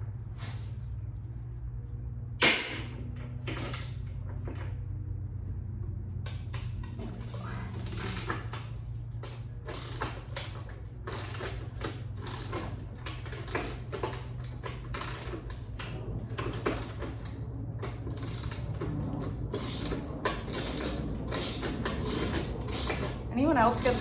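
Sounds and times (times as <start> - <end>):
hand ratchet clicking: 6.2 - 24.0.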